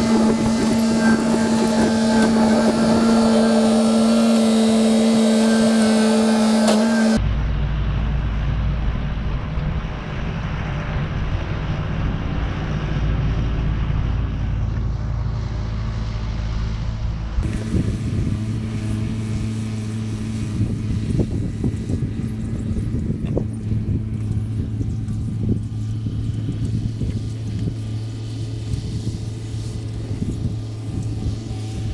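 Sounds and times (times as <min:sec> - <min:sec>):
heavy engine running: 0:00.0 - 0:07.2, 0:17.4 - 0:31.9.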